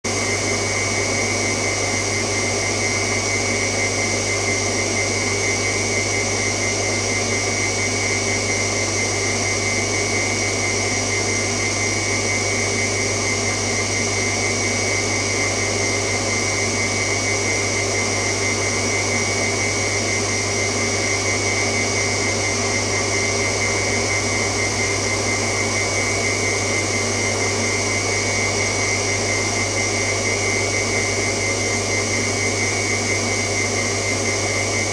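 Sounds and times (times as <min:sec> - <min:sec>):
washing machine motor hum: 0:10.0 - 0:34.9.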